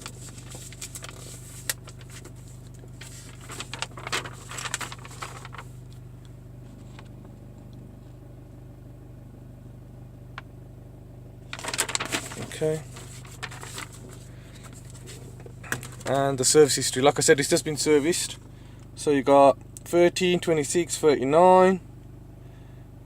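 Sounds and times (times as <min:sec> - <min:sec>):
papers rustling: 0:00.0 - 0:05.8, 0:11.5 - 0:16.3
diesel engine idling: 0:11.4 - 0:19.3.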